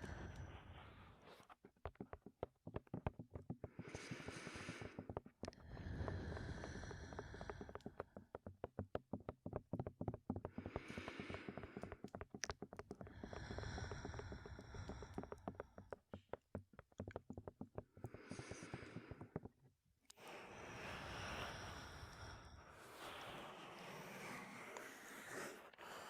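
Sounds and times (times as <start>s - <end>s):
fingertips tapping on microphone: 1.2s - 19.8s.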